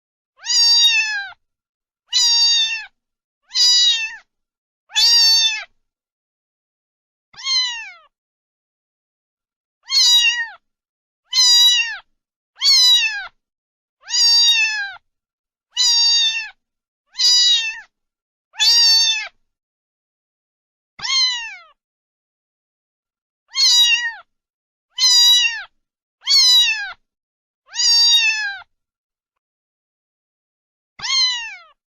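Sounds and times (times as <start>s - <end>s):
cat meowing: 0.4s - 1.4s, 2.1s - 4.3s, 4.9s - 5.7s, 7.4s - 8.2s, 9.8s - 10.6s, 11.3s - 13.4s, 14.0s - 15.0s, 15.7s - 17.9s, 18.6s - 19.4s, 21.0s - 21.8s, 23.5s - 24.3s, 24.9s - 27.0s, 27.7s - 28.7s, 31.0s - 31.8s.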